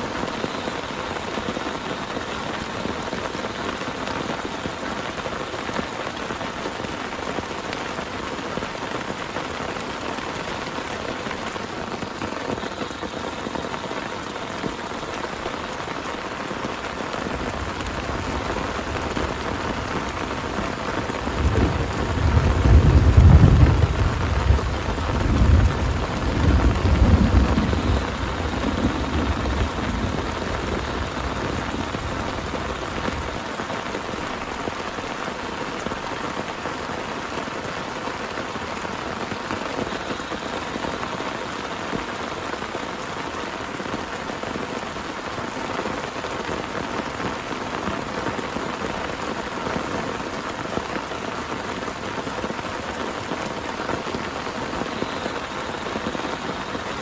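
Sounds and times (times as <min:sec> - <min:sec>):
heavy rain: 0:00.0 - 0:57.0
low thunder rumble: 0:17.2 - 0:33.5.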